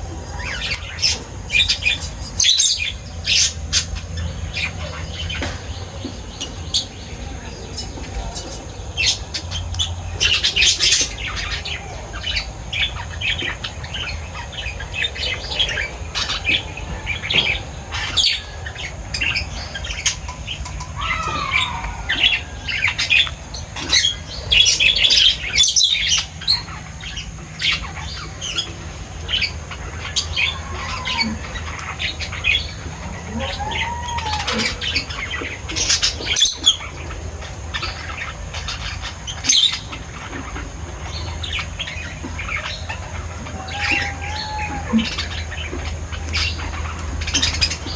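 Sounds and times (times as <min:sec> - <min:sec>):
pet birds chirping and squawking: 0:00.0 - 0:47.9.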